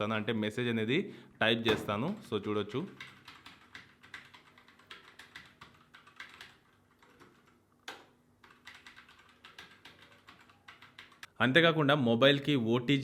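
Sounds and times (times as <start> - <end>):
mechanical keyboard keys clacking: 2.9 - 11.3.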